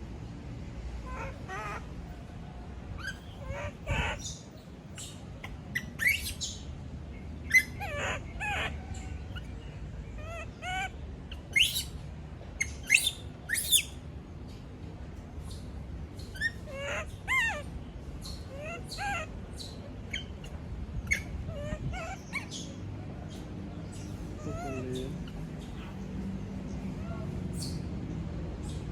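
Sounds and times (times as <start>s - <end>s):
monkey screaming and squeaking: 1.0s - 1.9s, 3.0s - 6.6s, 7.5s - 9.6s, 10.2s - 12.0s, 12.6s - 14.0s, 16.2s - 22.8s, 23.9s - 26.1s, 26.9s - 27.8s.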